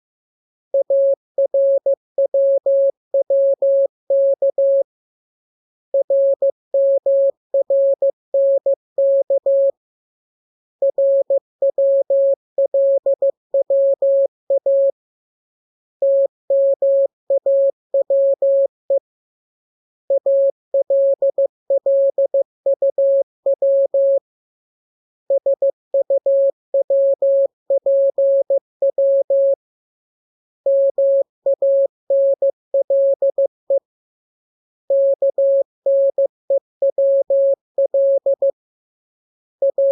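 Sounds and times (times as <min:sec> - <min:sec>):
morse code tone: 0:39.6 - 0:39.9.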